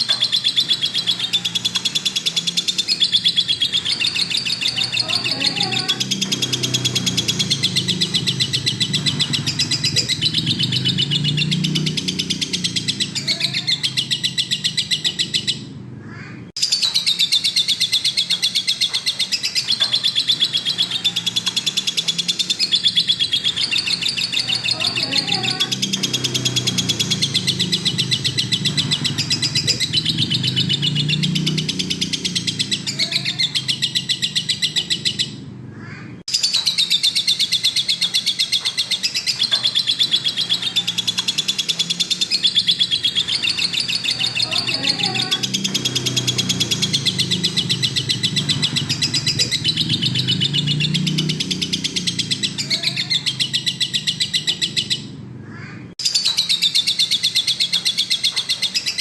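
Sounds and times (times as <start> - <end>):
bird chattering trill: 0.0 - 59.0.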